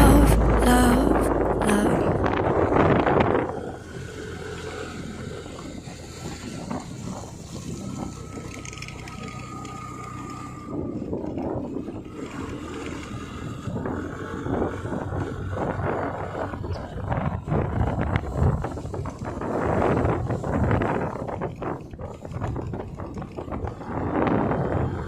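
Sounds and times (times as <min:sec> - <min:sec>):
background music: 0:00.0 - 0:02.1
motorcycle engine on road: 0:00.0 - 0:25.0.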